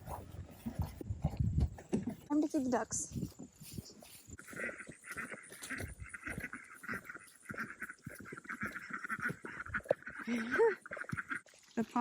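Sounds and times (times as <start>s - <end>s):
ducks quacking: 4.0s - 12.0s.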